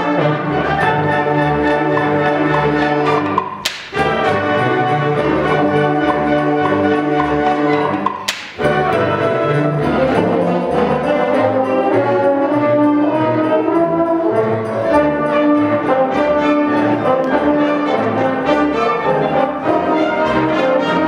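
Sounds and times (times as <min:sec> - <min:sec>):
concert band playing: 0:00.0 - 0:21.0
sharp crack: 0:03.4 - 0:04.2, 0:08.1 - 0:08.8.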